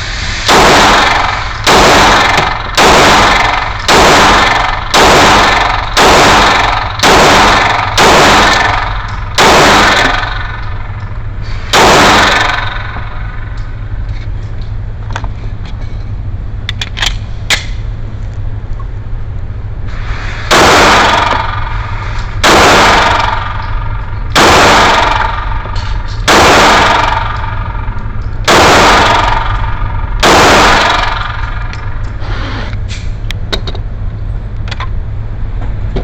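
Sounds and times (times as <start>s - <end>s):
pistol shots ringing: 0.5s - 10.5s, 24.4s - 25.6s, 26.2s - 27.7s, 28.5s - 31.5s.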